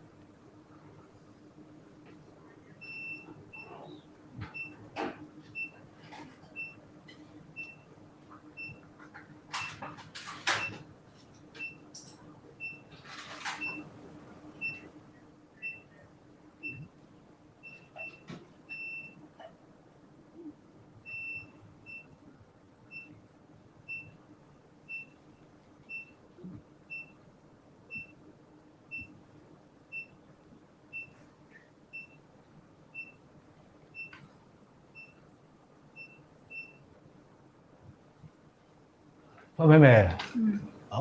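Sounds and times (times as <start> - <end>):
faint steady hum: 0.0 - 41.0
medical equipment beeping: 2.6 - 6.8, 7.6 - 7.9, 8.6 - 10.8, 11.6 - 13.9, 14.6 - 15.0, 17.6 - 19.5.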